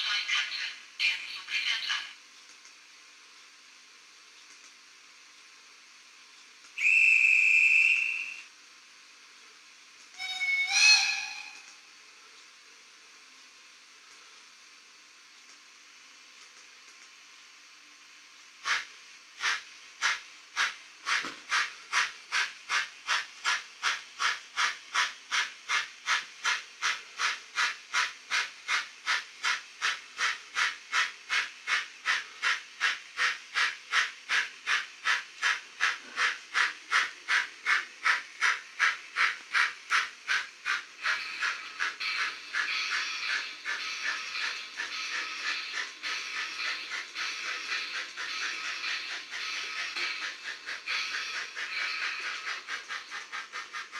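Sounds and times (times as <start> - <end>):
steam locomotive chuffs: 6.8 - 8.4, 9.7 - 12.0, 18.6 - 53.9
steady steam hiss: 11.2 - 53.9.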